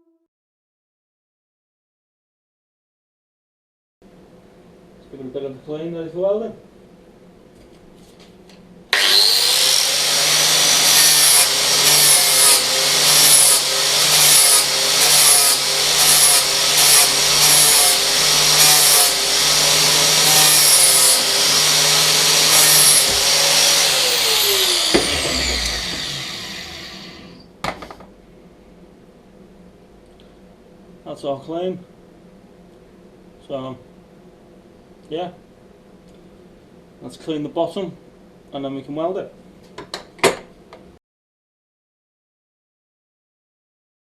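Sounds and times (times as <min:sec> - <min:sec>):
angle grinder on steel: 0:09.0 - 0:27.4
grinder spinning down: 0:09.0 - 0:27.5.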